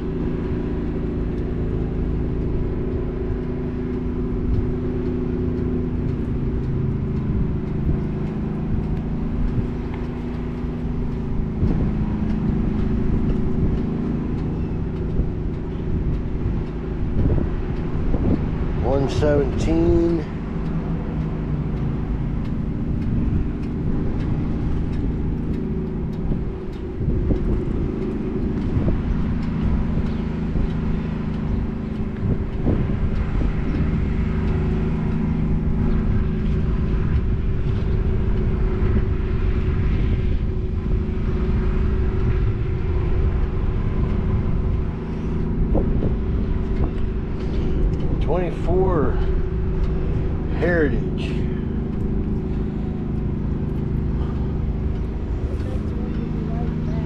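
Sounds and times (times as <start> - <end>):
vehicle engine idling: 0.0 - 57.0.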